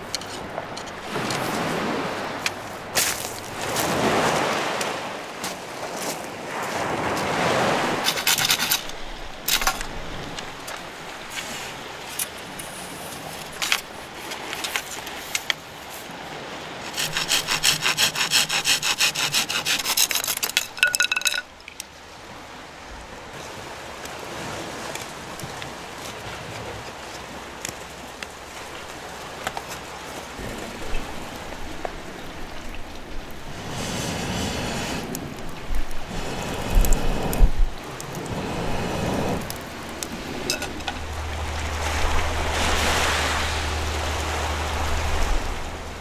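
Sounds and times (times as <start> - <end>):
hand saw cutting wood: 8.0 - 8.9, 16.9 - 20.8.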